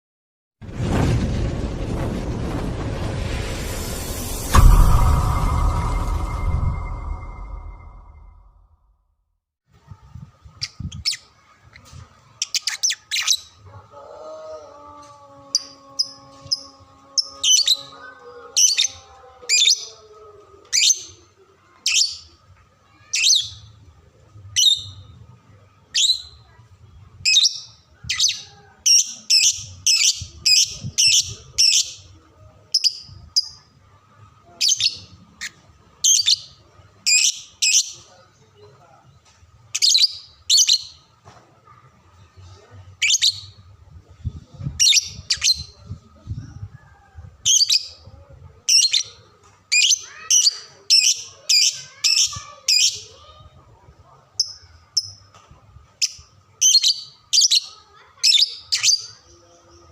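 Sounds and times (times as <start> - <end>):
low held tone: 3.6 - 8.9.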